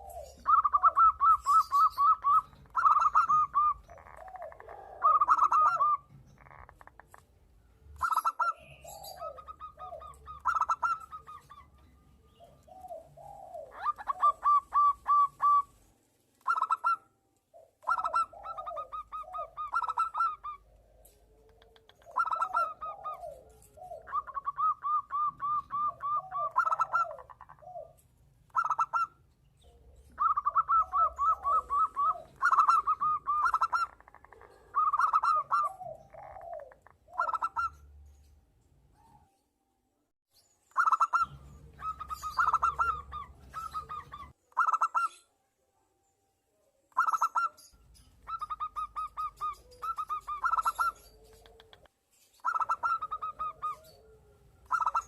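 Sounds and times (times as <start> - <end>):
doves cooing: 0.0 - 15.8, 16.4 - 37.9, 40.8 - 45.2, 48.2 - 55.0.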